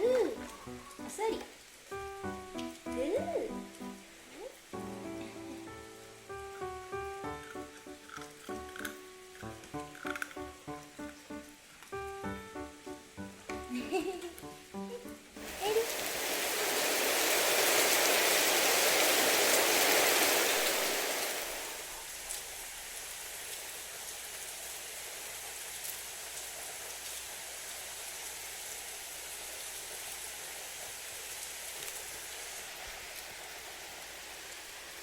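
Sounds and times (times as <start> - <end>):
background music: 0.0 - 15.8
steady hiss with faint ticks: 0.2 - 15.4, 20.6 - 35.0
loud rushing water: 15.4 - 24.4.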